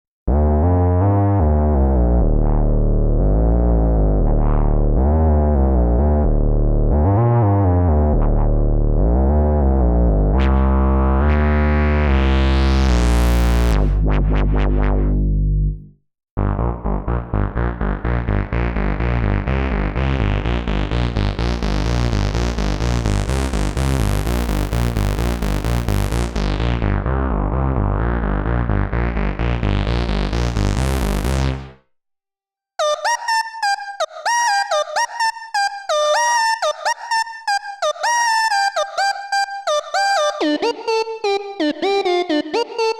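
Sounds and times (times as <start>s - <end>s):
synthesizer bass line: 0.3s - 31.8s, 32.8s - 42.9s
fast synthesizer note sequence: 10.4s - 15.2s, 16.6s - 27.1s, 32.8s - 42.9s.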